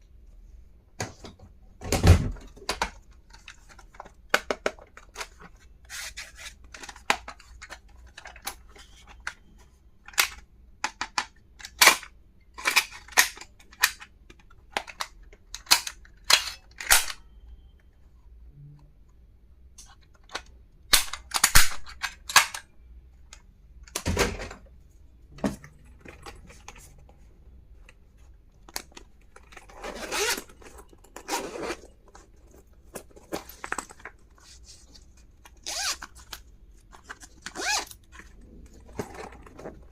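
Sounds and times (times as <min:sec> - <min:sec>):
wrapping rustling: 0:29.0 - 0:39.9.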